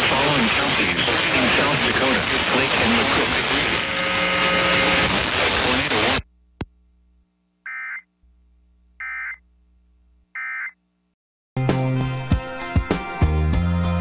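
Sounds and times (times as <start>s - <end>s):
loud music with sharp beats: 11.6s - 14.0s.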